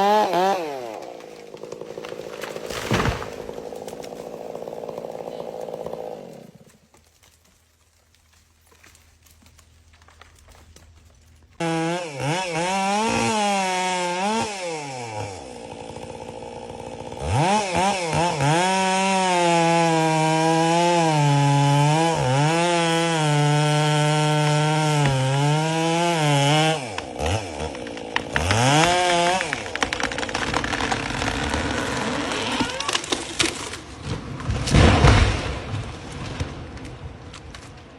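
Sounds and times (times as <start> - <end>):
chainsaw engine revving: 0.0 - 6.7, 11.6 - 33.8.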